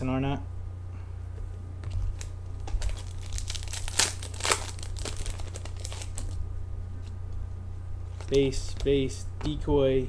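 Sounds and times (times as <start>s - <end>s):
low hum: 0.0s - 10.0s
wrapper tearing and crinkling: 1.8s - 6.4s.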